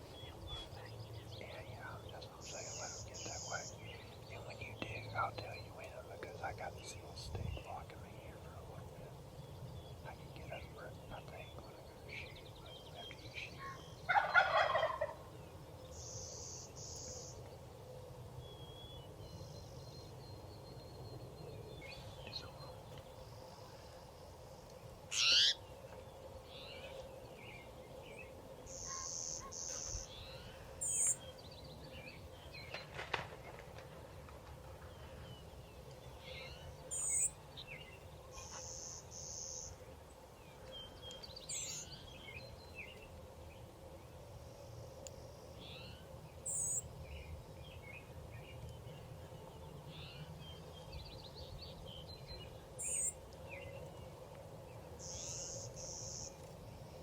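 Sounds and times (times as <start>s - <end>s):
faint steady hum: 0.0s - 57.0s
bird chirps: 25.1s - 25.6s, 28.7s - 32.6s, 36.2s - 39.8s, 50.9s - 53.7s
buzzy bird trill: 25.1s - 25.6s.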